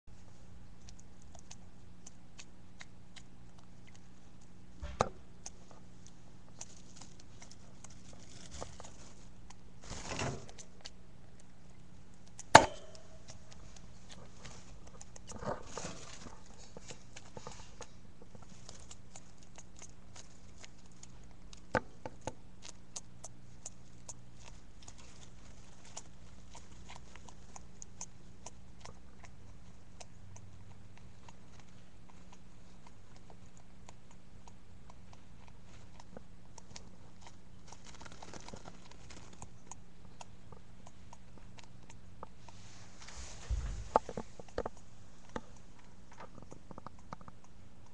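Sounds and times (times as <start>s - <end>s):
hamster moving about: 13.6s - 19.3s.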